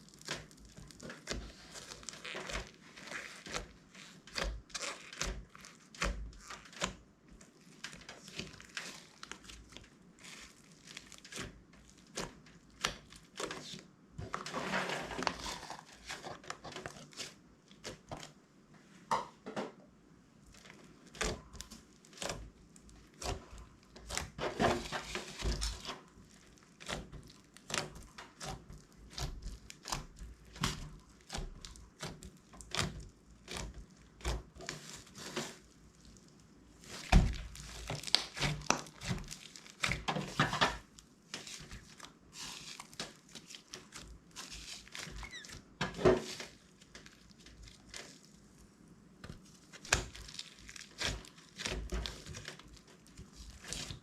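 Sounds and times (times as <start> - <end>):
slime sticky clicks and crackles: 0.0 - 7.0, 36.0 - 40.1, 49.3 - 54.0.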